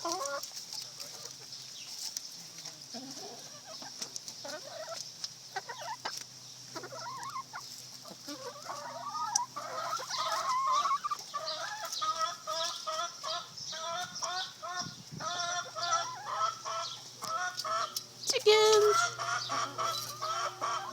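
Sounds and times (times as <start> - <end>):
chickens clucking and calling: 0.0 - 20.9.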